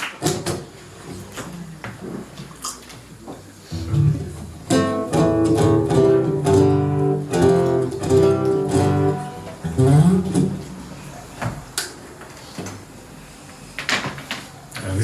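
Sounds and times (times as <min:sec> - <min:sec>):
guitar strummed and plucked: 0:03.7 - 0:10.8.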